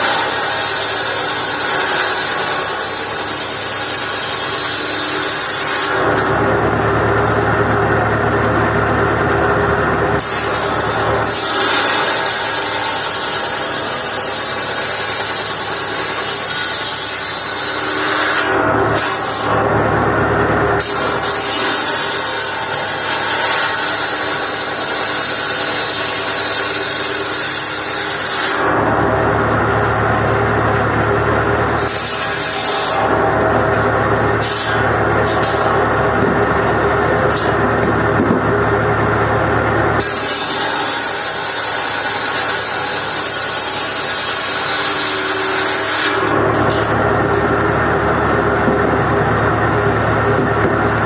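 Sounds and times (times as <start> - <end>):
circular saw cutting wood: 0.0 - 51.0
tractor engine running: 6.0 - 11.2, 46.4 - 51.0.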